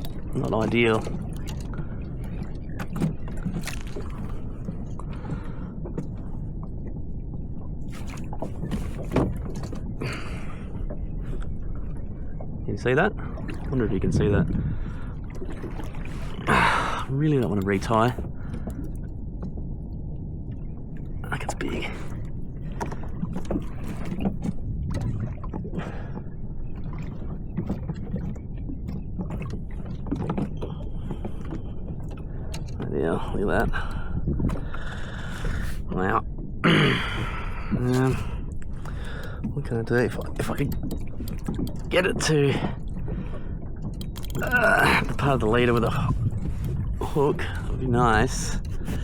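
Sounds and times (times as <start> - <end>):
short knocks and splashes: 0.0 - 6.2, 7.9 - 10.6, 26.8 - 32.9, 35.9 - 49.0
water sloshing around kayak: 0.0 - 49.0
wind rumbling on microphone: 0.0 - 49.0.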